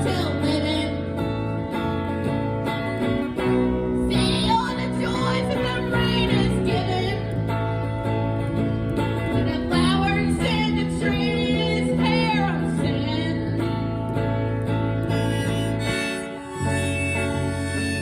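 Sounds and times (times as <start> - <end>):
acoustic blues guitar: 0.0 - 18.0
pitch-bending melody line: 14.9 - 18.0.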